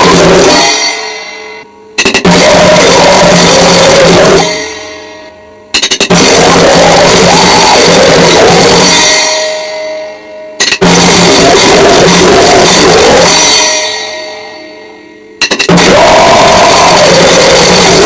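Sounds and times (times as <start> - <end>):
blasting drums and cymbals: 0.0 - 18.0
distorted noise music: 0.0 - 18.0.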